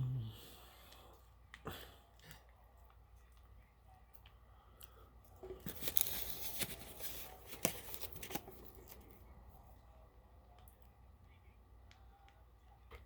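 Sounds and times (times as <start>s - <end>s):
packaging tearing and crinkling: 5.6s - 9.1s.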